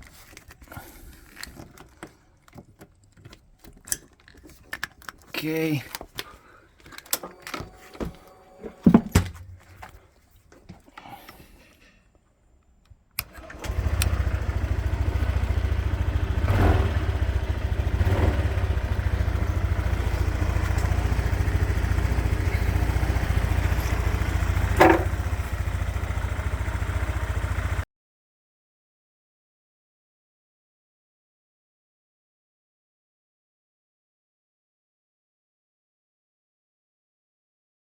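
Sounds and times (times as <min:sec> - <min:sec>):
scooter engine starting and idling: 0:05.4 - 0:10.0, 0:13.2 - 0:27.8.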